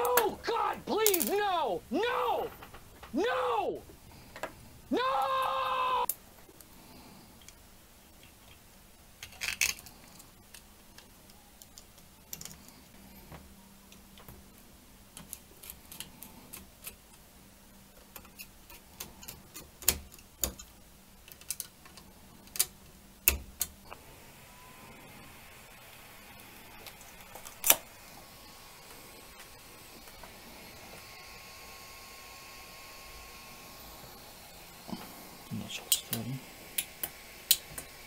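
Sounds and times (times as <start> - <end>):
small parts clicking and tapping: 0.0 - 1.5, 7.4 - 17.3, 17.9 - 24.0, 26.7 - 28.0, 33.1 - 38.0.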